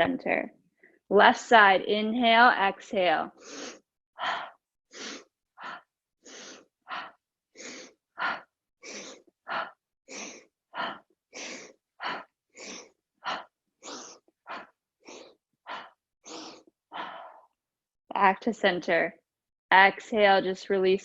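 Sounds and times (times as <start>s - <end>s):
woman breathing rapidly: 3.3s - 17.6s.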